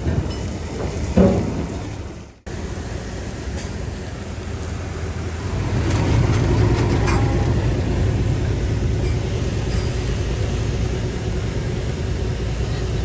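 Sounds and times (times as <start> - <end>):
heavy diesel machine running: 0.0 - 13.0
metallic clanks: 5.5 - 10.5.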